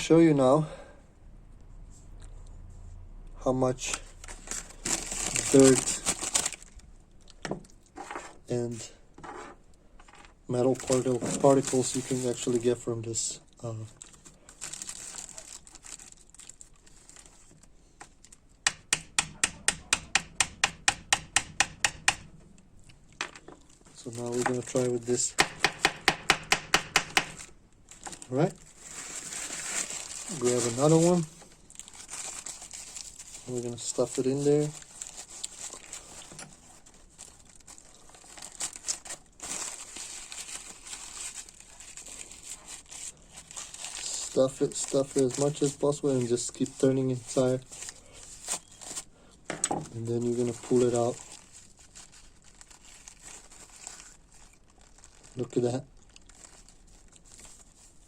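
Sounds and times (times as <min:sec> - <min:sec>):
wipe crinkling and rustling: 0:03.7 - 0:06.8, 0:09.2 - 0:12.8, 0:27.4 - 0:49.1, 0:49.8 - 0:58.0.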